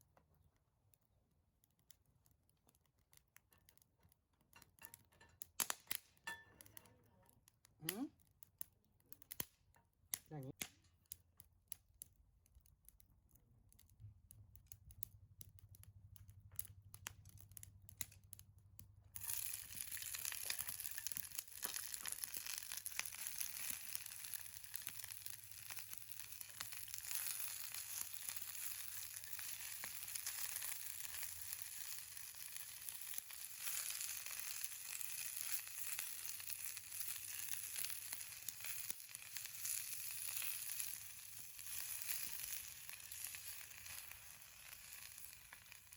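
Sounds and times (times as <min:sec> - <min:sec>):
food sizzling in a pan: 0:19.2 - 0:45.9.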